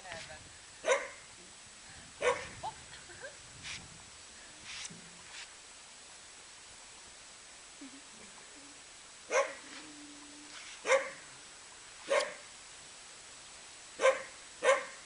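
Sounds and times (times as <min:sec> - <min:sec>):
puppy barking: 0:00.8 - 0:01.2, 0:02.2 - 0:02.6, 0:09.3 - 0:09.6, 0:10.8 - 0:11.2, 0:12.1 - 0:12.4, 0:14.0 - 0:15.0.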